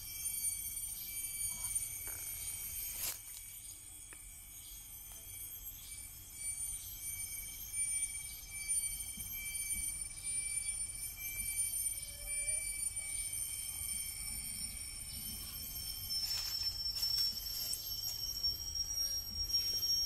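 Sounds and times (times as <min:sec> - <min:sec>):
insects buzzing: 0:00.0 - 0:20.0.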